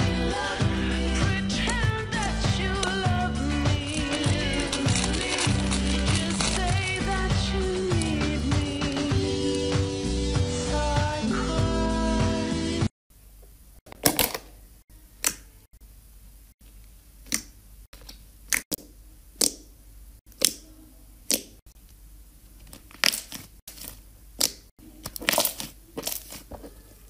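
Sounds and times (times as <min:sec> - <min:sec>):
slime squished by hand: 0:22.7 - 0:26.8.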